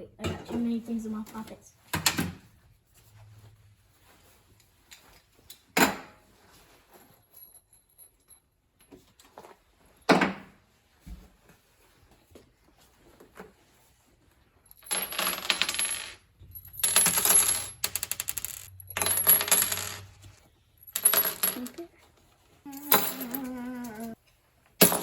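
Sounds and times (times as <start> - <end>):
coins clacking on hard surface: 14.8 - 21.9, 22.7 - 24.2
coins spinning and rattling: 14.8 - 21.9, 22.7 - 24.2.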